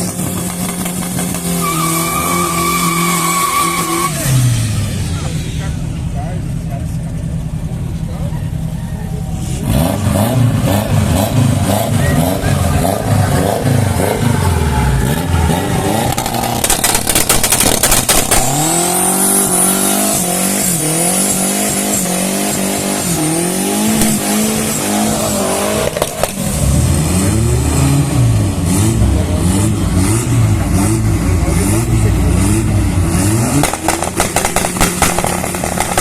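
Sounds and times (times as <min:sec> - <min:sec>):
racing car engine revving: 0:09.2 - 0:36.0
engine pops crackling: 0:16.0 - 0:18.8, 0:33.6 - 0:36.0.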